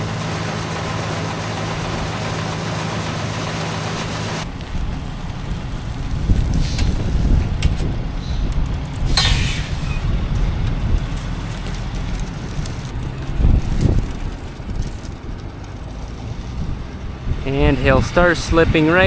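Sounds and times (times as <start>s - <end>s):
truck engine rumble: 0.0s - 19.0s
wind buffeting microphone: 4.2s - 19.0s.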